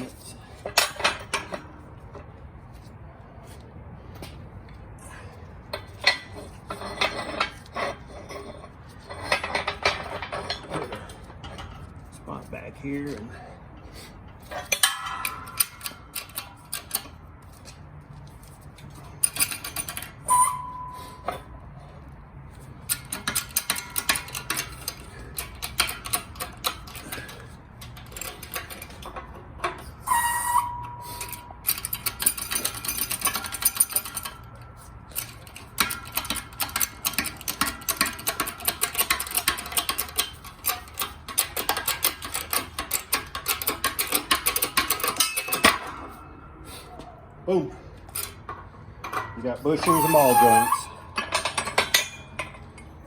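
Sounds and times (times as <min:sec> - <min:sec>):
metal tools clicking and clinking: 0:14.5 - 0:17.2, 0:22.9 - 0:46.3, 0:48.1 - 0:53.0
ringing metal strikes: 0:20.3 - 0:21.5.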